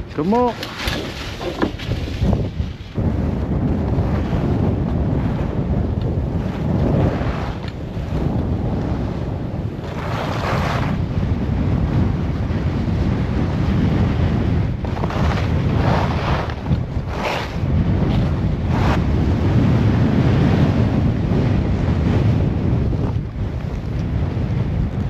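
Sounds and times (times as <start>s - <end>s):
wind buffeting microphone: 0.0s - 25.0s
skis scraping snow: 0.2s - 11.0s, 14.8s - 19.6s.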